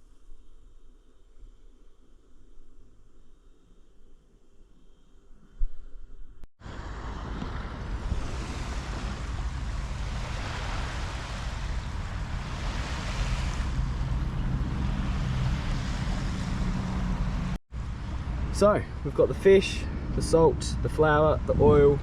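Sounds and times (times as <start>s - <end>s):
surf washing on a beach: 6.6s - 21.9s
wind buffeting microphone: 6.6s - 22.0s.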